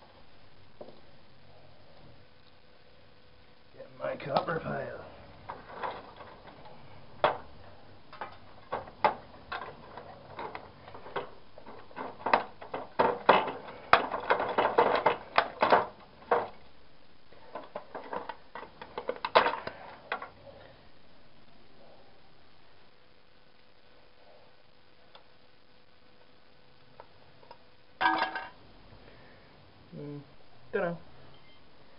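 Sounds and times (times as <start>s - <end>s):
hard parts clattering: 5.4s - 7.5s, 8.1s - 16.6s, 17.5s - 20.4s, 28.0s - 28.6s.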